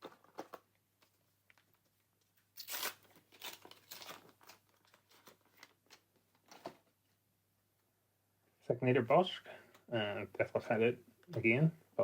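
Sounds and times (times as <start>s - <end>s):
wrapper tearing and crinkling: 2.6s - 6.0s.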